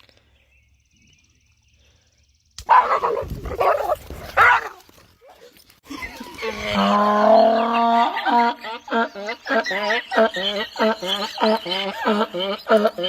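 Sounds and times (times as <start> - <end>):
dog barking: 2.7 - 4.8.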